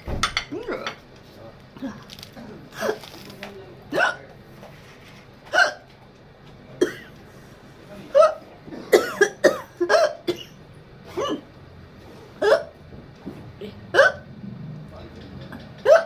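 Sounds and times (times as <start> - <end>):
woman hiccupping: 13.6 - 14.3, 15.5 - 16.0.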